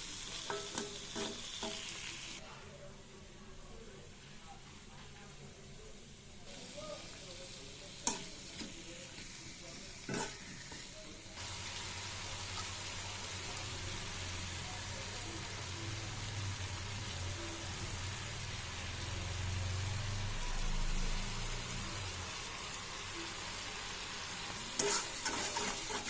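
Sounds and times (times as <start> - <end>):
food frying in hot oil: 0.0 - 2.4, 6.5 - 26.0.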